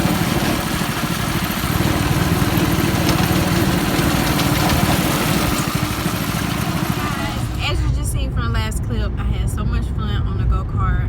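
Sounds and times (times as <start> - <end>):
go-kart engine running: 0.0 - 8.6.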